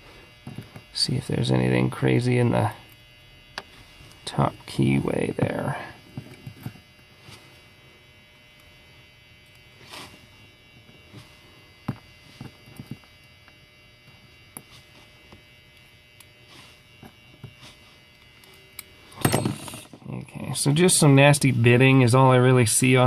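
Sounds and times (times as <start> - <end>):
faint electrical hum: 0.0 - 23.0.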